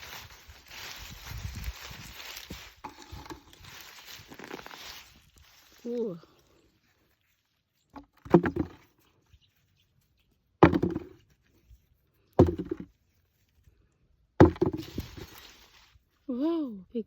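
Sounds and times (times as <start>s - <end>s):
digging knocks and scraping: 0.0s - 5.8s, 7.8s - 9.6s, 10.2s - 13.6s, 14.4s - 16.0s
soil rustling: 0.0s - 16.3s.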